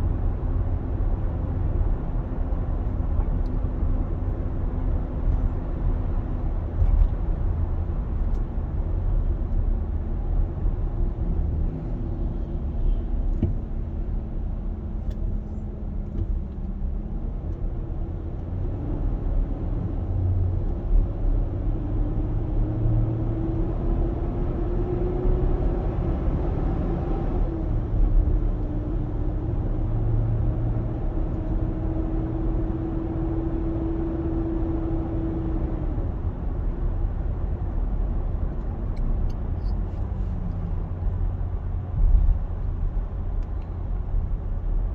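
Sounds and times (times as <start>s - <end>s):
engine rumbling: 36.0s - 44.9s.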